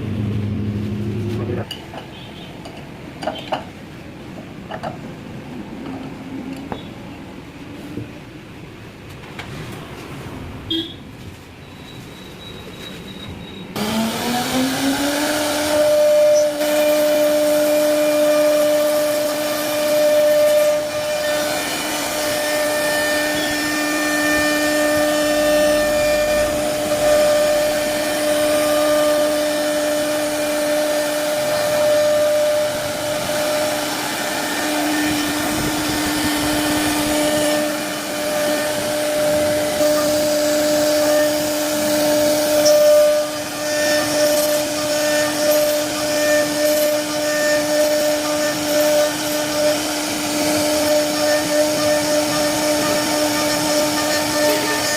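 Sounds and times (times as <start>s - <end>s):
router bit cutting wood: 13.8s - 54.9s
spindle high whine: 15.4s - 54.9s.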